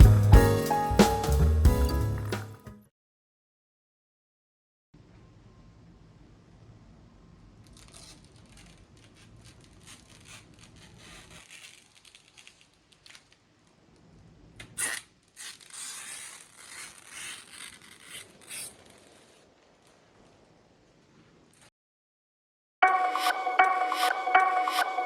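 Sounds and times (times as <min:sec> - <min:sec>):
packaging crinkling and rustling: 0:07.6 - 0:20.0.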